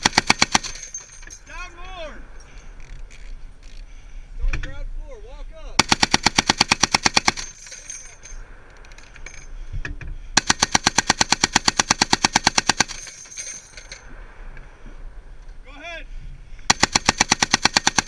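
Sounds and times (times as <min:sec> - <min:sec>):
machine gun firing bursts: 0:00.0 - 0:01.0, 0:05.8 - 0:07.7, 0:10.4 - 0:13.2, 0:16.7 - 0:18.0.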